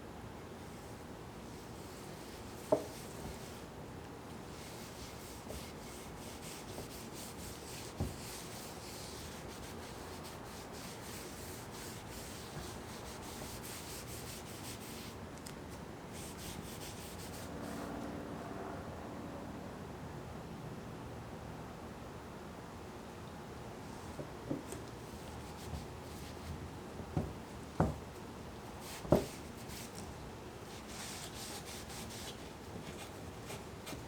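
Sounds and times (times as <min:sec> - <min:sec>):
hand sanding strokes: 0:04.5 - 0:15.2, 0:16.2 - 0:17.7, 0:30.7 - 0:34.0.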